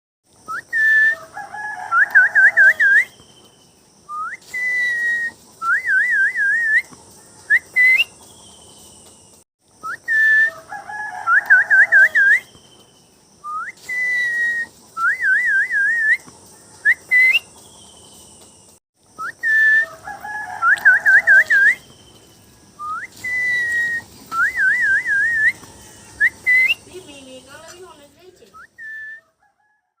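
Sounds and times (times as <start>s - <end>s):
parrot whistling: 26.2s - 26.8s.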